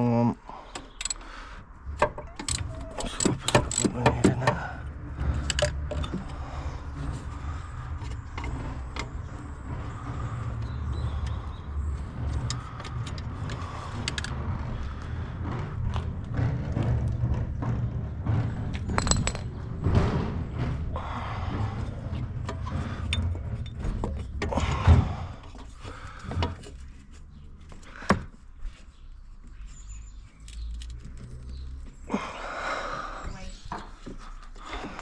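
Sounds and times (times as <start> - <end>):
steady low rumble: 0.0 - 29.1
metal tools clinking and rattling: 2.1 - 4.7, 18.8 - 19.5.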